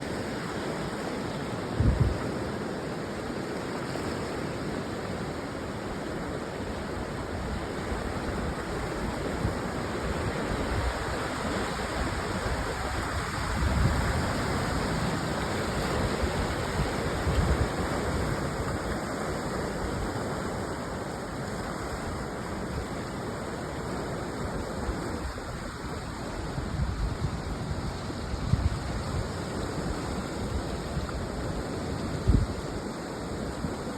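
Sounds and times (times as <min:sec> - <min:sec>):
ocean surf rushing: 0:00.0 - 0:33.9
wind buffeting microphone: 0:01.6 - 0:02.6, 0:05.8 - 0:20.9, 0:24.2 - 0:33.9.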